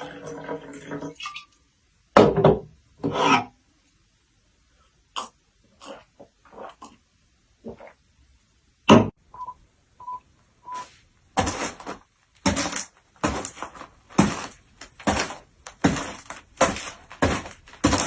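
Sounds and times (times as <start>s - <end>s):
short beep tones: 9.3s - 10.9s
crunching noises: 10.8s - 18.0s.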